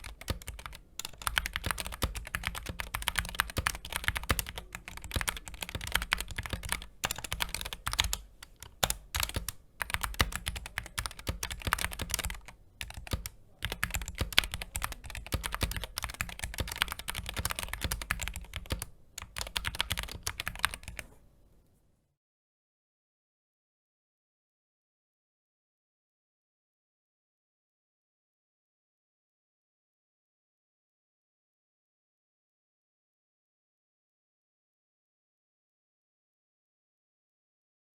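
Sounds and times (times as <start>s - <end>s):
keyboard typing: 0.0s - 21.2s.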